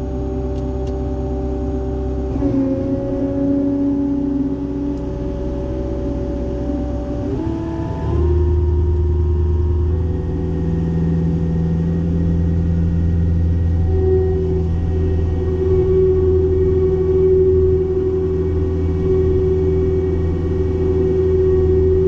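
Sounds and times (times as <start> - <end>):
diesel engine whining: 0.0 - 22.0.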